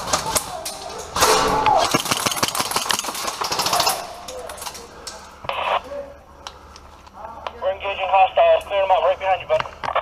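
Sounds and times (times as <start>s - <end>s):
airsoft guns firing: 1.2s - 4.3s.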